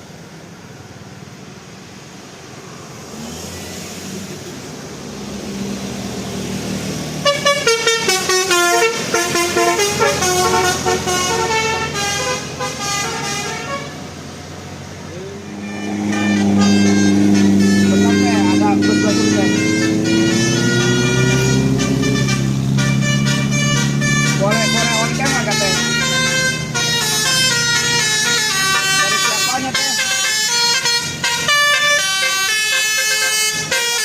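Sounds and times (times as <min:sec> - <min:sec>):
vehicle rumble: 0:00.0 - 0:34.0
bus air horn playing a tune: 0:07.2 - 0:14.2, 0:15.2 - 0:34.0.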